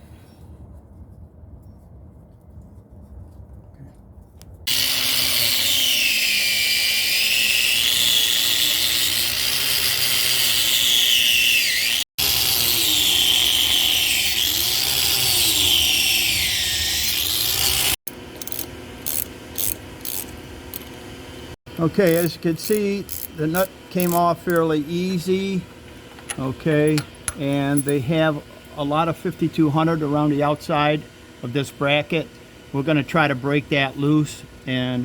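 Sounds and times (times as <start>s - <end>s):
cordless power drill whining: 4.7s - 25.2s.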